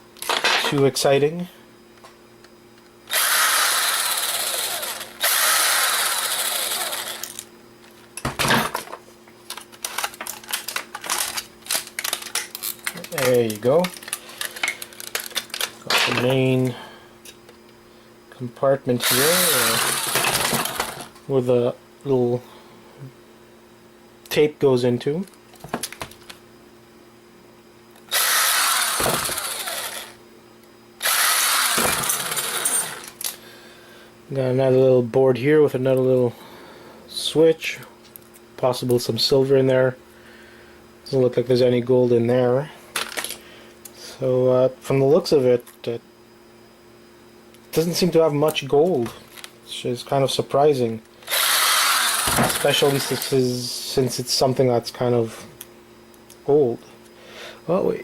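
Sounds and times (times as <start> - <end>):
electric screwdriver running: 3.1 - 7.4, 19.0 - 21.1, 28.1 - 30.2, 31.0 - 33.2, 51.2 - 53.3.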